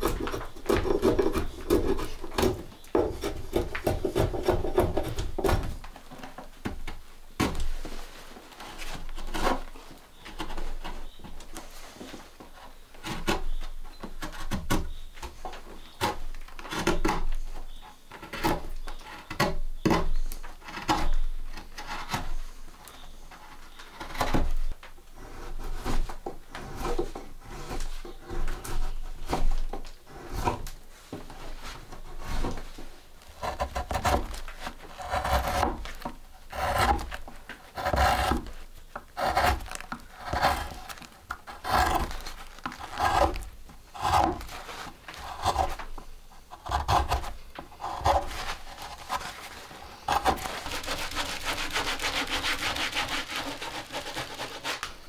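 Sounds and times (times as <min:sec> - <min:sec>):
fast scratching: 0:33.3 - 0:45.9, 0:46.5 - 0:54.9.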